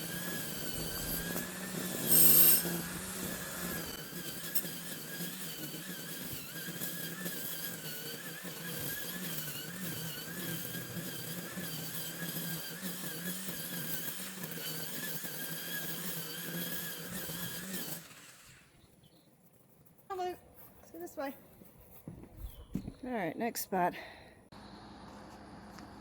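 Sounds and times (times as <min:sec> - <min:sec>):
string trimmer high whine: 0:00.0 - 0:18.8.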